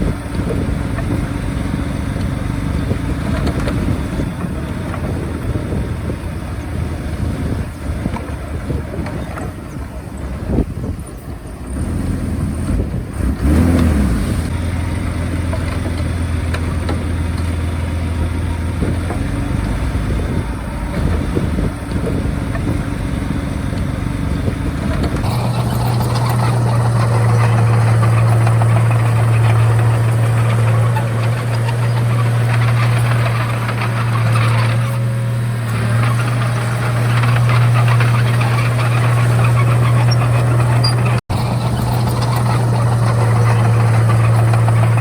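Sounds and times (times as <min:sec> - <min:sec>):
bulldozer diesel engine running: 0:00.0 - 0:45.0.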